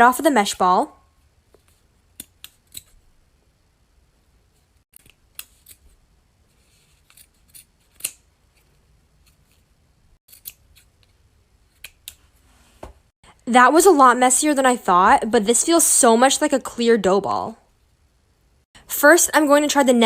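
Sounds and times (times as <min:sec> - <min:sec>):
scissors snipping mesh: 0:02.2 - 0:03.0, 0:07.0 - 0:08.3, 0:10.3 - 0:11.1.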